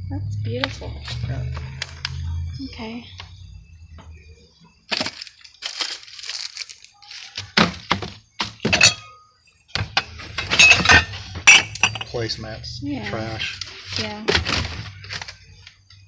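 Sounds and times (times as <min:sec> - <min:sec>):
glass and household items clattering: 0:04.9 - 0:16.0.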